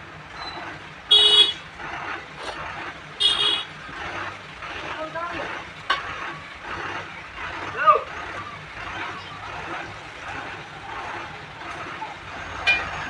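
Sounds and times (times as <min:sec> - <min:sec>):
background traffic: 0:00.0 - 0:13.0
vehicle horn honks: 0:01.1 - 0:01.7, 0:03.2 - 0:03.8
faint voices: 0:07.4 - 0:12.5.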